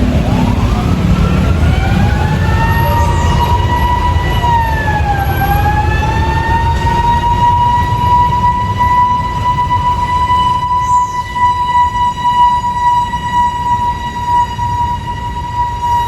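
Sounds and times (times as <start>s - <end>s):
low rumble: 0.0s - 10.6s
fire truck siren: 0.0s - 16.0s.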